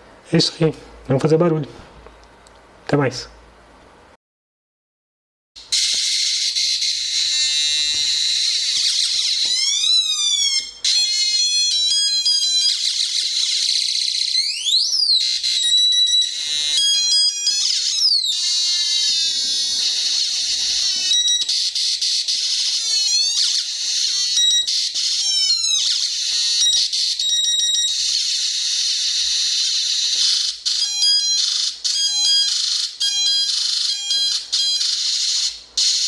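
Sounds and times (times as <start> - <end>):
electronic sound effects: 6.9 - 31.2.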